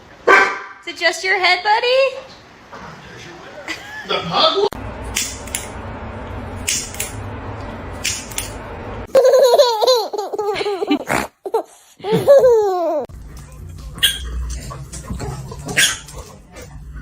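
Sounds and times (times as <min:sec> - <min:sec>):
high-pitched hearty laughter: 0:09.1 - 0:13.1.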